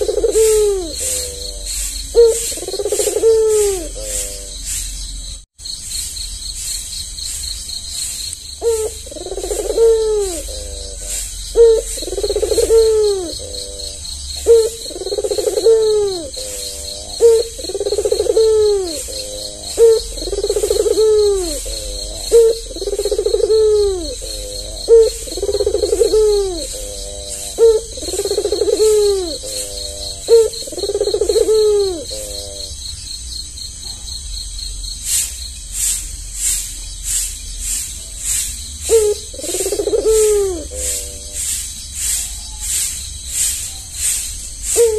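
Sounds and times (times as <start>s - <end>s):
dove cooing: 0.0s - 4.8s, 8.6s - 32.8s, 38.8s - 42.4s, 44.0s - 44.9s
insects chirring: 0.0s - 44.9s.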